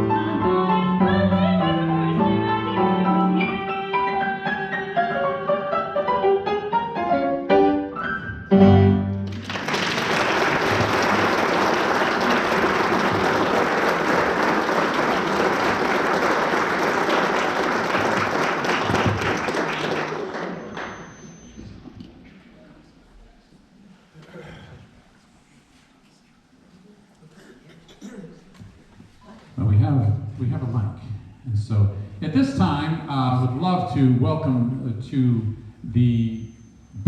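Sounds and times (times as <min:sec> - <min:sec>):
instrumental music: 0:00.0 - 0:09.4
audience applauding: 0:09.2 - 0:21.5.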